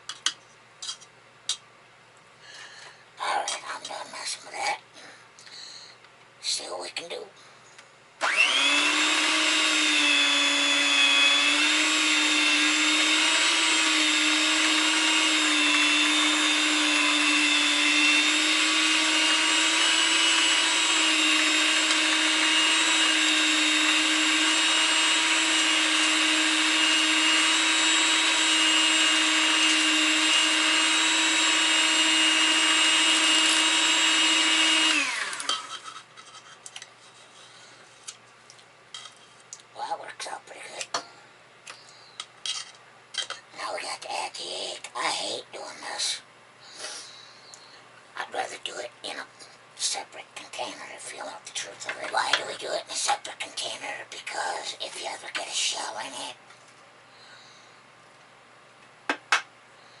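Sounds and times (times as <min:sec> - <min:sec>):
electric mixer motor whine: 0:08.2 - 0:35.9.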